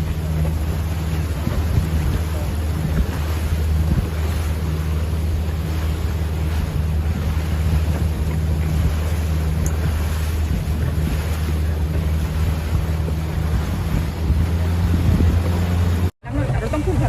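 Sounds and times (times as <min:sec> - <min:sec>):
boat engine humming: 0:00.0 - 0:17.0
rushing water: 0:00.0 - 0:17.0
wind on microphone: 0:00.0 - 0:17.0.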